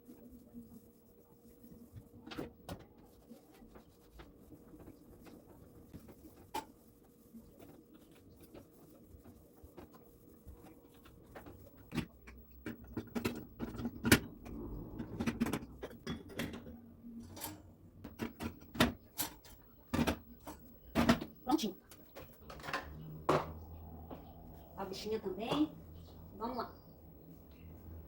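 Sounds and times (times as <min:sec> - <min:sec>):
household objects clicking and knocking: 0:11.3 - 0:23.6.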